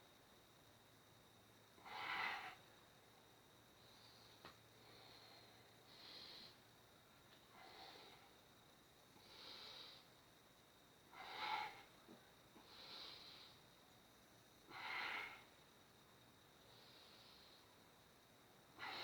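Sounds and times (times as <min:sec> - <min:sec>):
person breathing: 0:03.9 - 0:06.6.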